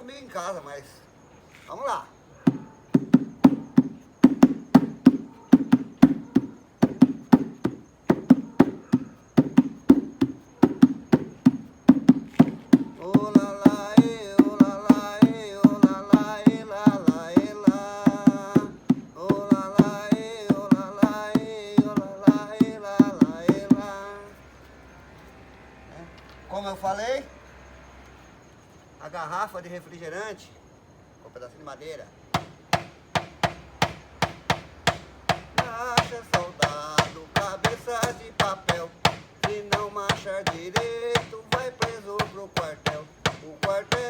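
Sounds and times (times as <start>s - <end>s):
bucket drumming hollow thuds: 2.5s - 24.0s, 32.4s - 44.0s
man singing: 10.7s - 24.4s, 35.3s - 44.0s.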